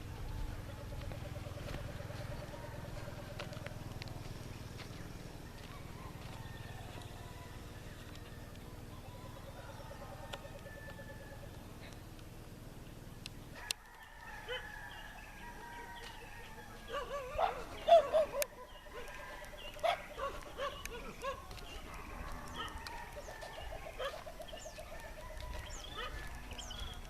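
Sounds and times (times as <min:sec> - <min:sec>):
chickens clucking: 0:15.5 - 0:27.0.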